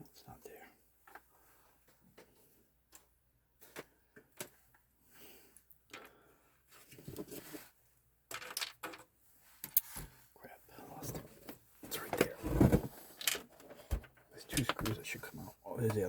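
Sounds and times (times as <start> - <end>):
hands handling computer parts: 1.0 - 4.9, 11.1 - 15.2.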